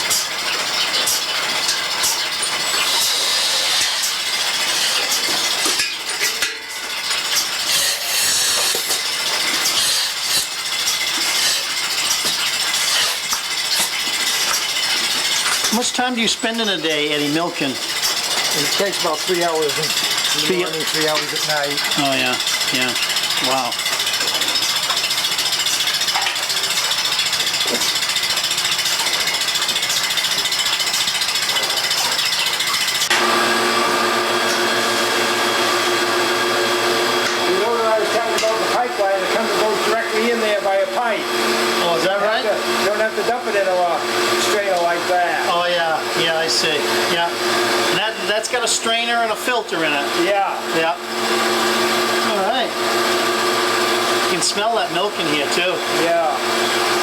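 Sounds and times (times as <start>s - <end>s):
milking machine vacuum hiss: 0.0s - 5.8s, 7.2s - 57.0s
clicks and clinks: 0.1s - 7.9s, 8.6s - 15.8s, 17.9s - 33.1s.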